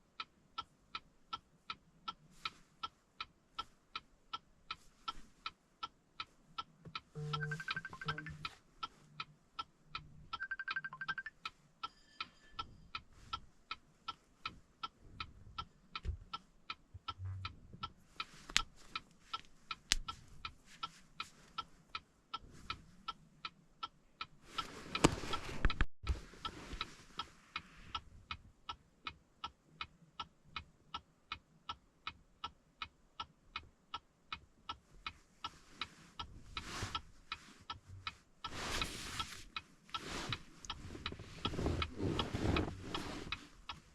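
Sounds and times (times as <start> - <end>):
steady ticking: 0.0 - 24.7, 39.5 - 43.9.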